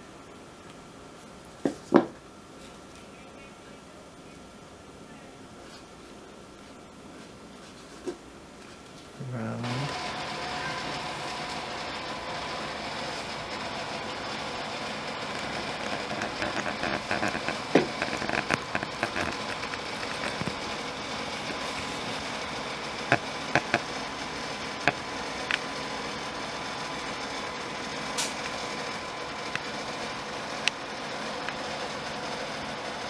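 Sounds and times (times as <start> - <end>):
steady background drone: 9.2 - 31.7
wooden parts clicking and tapping: 15.1 - 25.6.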